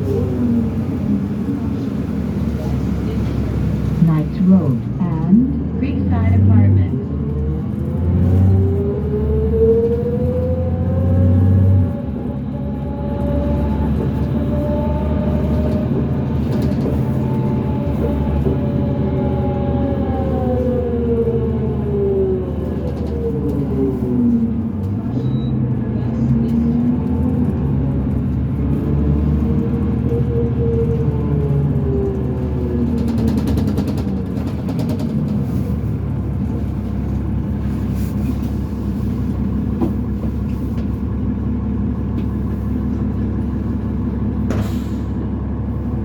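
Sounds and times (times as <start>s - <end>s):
diesel bus engine droning: 0.0s - 46.0s.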